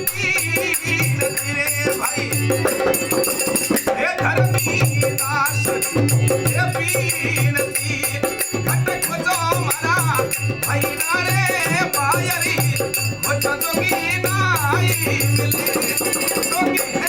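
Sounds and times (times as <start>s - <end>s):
pulsing drum beat: 0.0s - 17.0s
rattling percussion: 0.0s - 17.0s.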